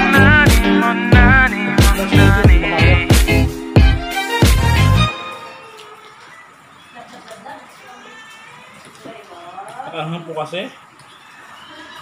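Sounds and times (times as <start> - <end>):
hip-hop song with heavy bass beat: 0.0 - 5.0.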